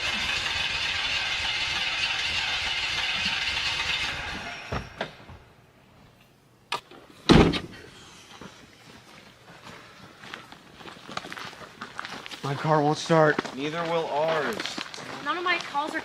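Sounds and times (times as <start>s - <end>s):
car engine cranking on starter: 0.0s - 5.3s
car door slamming: 7.3s - 7.7s.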